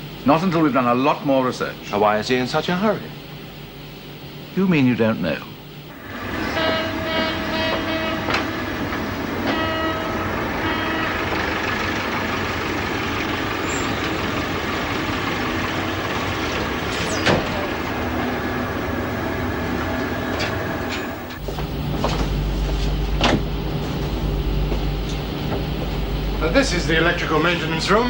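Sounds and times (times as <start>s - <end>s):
ship machinery running: 5.9s - 28.0s
short pitched tones: 6.0s - 12.0s.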